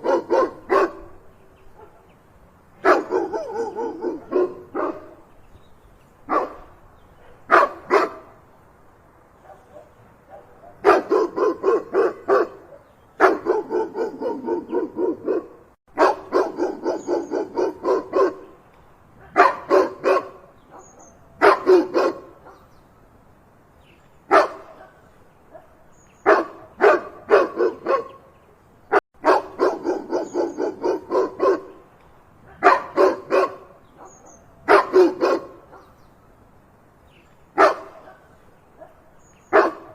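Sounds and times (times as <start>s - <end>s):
dog barking: 0.0s - 1.2s, 1.8s - 2.1s, 2.8s - 5.2s, 6.3s - 8.3s, 9.4s - 18.5s, 19.2s - 22.7s, 24.3s - 28.2s, 29.2s - 31.8s, 32.5s - 36.0s, 37.6s - 39.9s.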